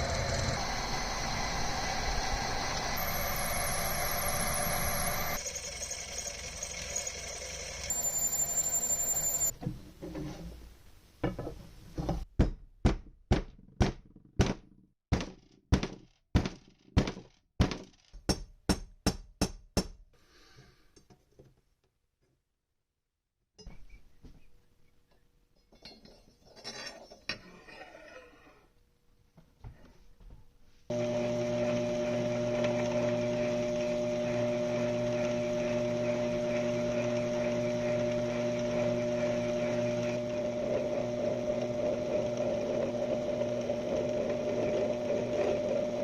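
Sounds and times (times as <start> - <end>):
machine running: 0.0 - 9.5, 30.9 - 46.0.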